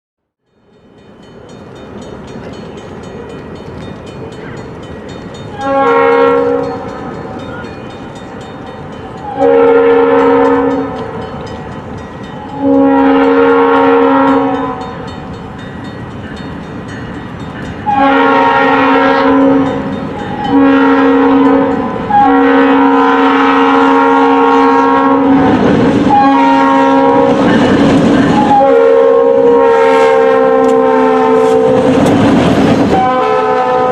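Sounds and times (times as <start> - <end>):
approaching train rumble: 0.4 - 33.9
locomotive air horn blasts: 5.5 - 7.2, 9.2 - 11.2, 12.5 - 15.0, 17.9 - 32.0, 32.9 - 33.9.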